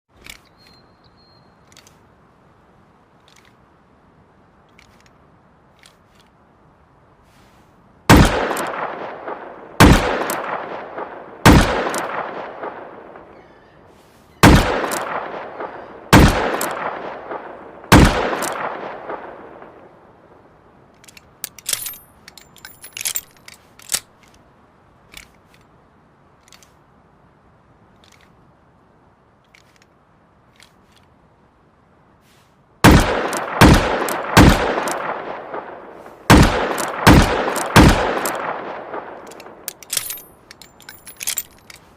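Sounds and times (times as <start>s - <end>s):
small metallic clicks and clinks: 20.9s - 24.4s, 28.0s - 28.4s, 29.4s - 31.1s, 39.2s - 41.9s.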